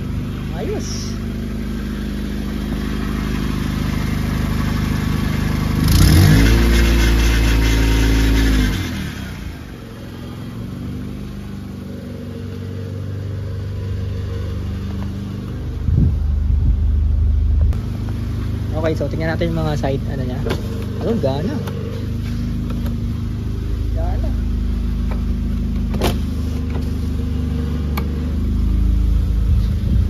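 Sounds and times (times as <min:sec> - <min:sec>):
car engine idling and revving: 0:00.0 - 0:30.0.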